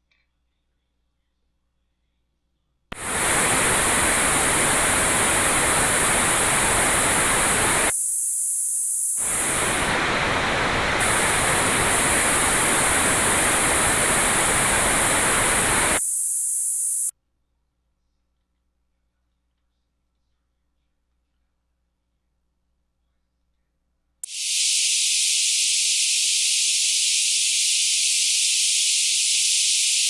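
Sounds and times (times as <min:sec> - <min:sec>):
broad even noise: 0:03.0 - 0:08.0, 0:09.2 - 0:16.1
steady high hiss: 0:03.0 - 0:17.1, 0:24.2 - 0:30.0.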